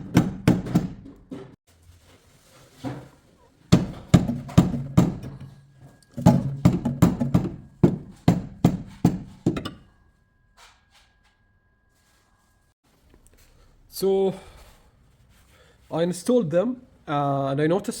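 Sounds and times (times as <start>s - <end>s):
hammer striking metal: 3.7s - 11.1s.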